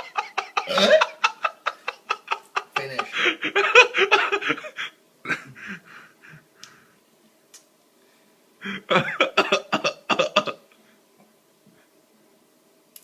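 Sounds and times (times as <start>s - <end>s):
man burping: 0.6s - 1.2s, 8.8s - 10.6s.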